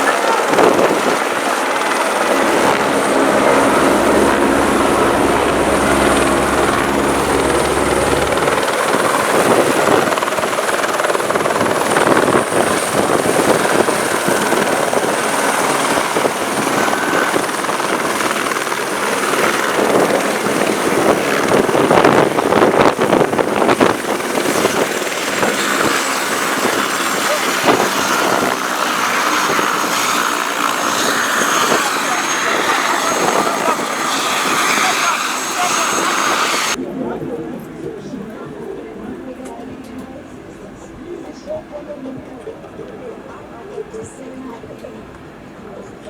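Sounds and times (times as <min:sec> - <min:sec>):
helicopter rotor beat: 0:00.0 - 0:38.5
thin high whine: 0:01.4 - 0:11.2, 0:25.0 - 0:37.4.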